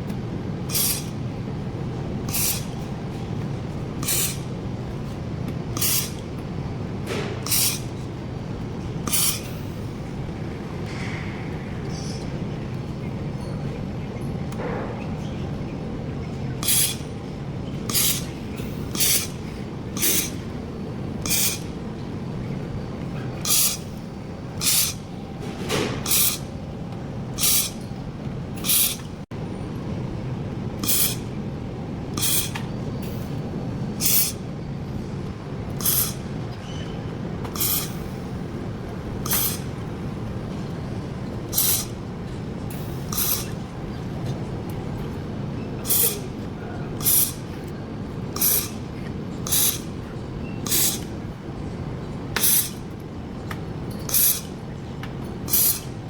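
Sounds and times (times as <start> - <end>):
welder hissing bursts: 0.7 - 1.1, 2.3 - 2.7, 5.8 - 6.2, 7.5 - 7.8, 16.6 - 17.0, 17.9 - 19.4, 20.0 - 20.4, 21.3 - 21.7, 23.4 - 24.0, 24.6 - 25.1, 26.0 - 26.5, 27.4 - 27.8, 28.6 - 29.1, 30.8 - 31.2, 32.2 - 32.5, 34.0 - 34.4, 35.8 - 36.2, 37.6 - 38.2, 39.2 - 39.7, 41.5 - 42.0, 42.8 - 43.6, 45.8 - 46.3, 47.0 - 47.5, 48.4 - 48.8, 49.4 - 49.9, 50.6 - 51.1, 52.4 - 52.8, 54.1 - 54.5, 55.5 - 55.9.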